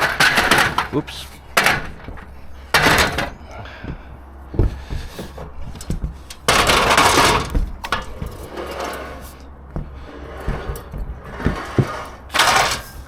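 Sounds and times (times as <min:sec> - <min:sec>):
equipment knocks and clatters: 0:00.0 - 0:13.0
loud scraping rush: 0:06.5 - 0:13.0.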